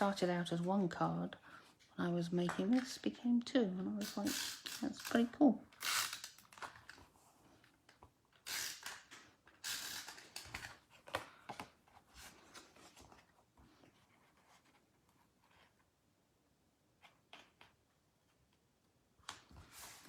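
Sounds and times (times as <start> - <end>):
paper sliding and scraping: 19.6 - 20.0.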